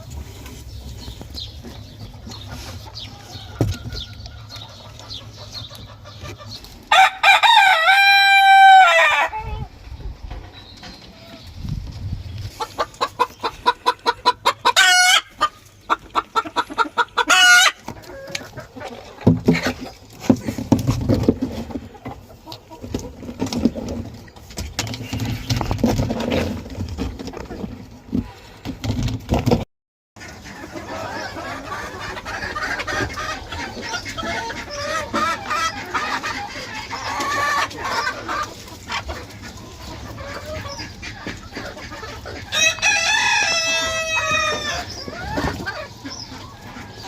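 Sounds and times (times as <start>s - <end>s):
chickens clucking and cackling: 0.0s - 29.6s, 30.2s - 47.0s
rooster crowing: 6.9s - 9.4s, 42.6s - 44.9s.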